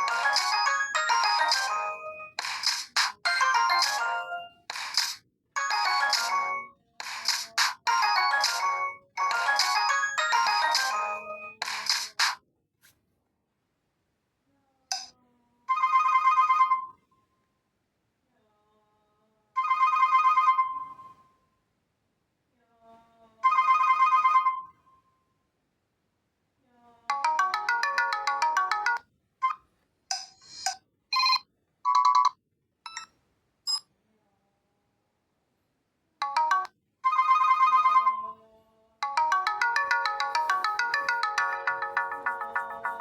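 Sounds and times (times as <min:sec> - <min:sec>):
melodic phone jingle: 0:00.0 - 0:02.4, 0:03.2 - 0:04.7, 0:05.6 - 0:06.7, 0:07.9 - 0:11.6, 0:27.1 - 0:29.0, 0:39.0 - 0:43.0.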